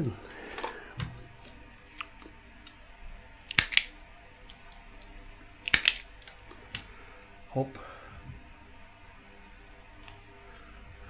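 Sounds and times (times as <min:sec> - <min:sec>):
hand cutters snipping: 0:03.5 - 0:03.9, 0:05.7 - 0:06.1.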